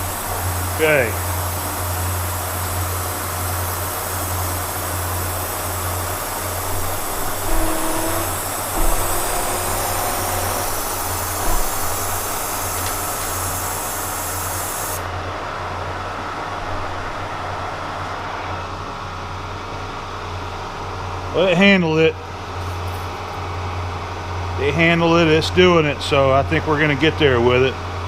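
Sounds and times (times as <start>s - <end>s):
milling machine cutting steel: 2.8s - 14.9s
high hiss: 3.7s - 15.1s
low hum: 6.0s - 13.3s.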